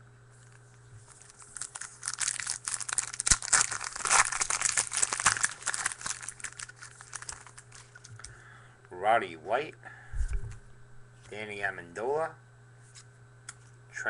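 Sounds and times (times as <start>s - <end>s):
card pack wrapper tearing and crinkling: 1.1s - 8.2s.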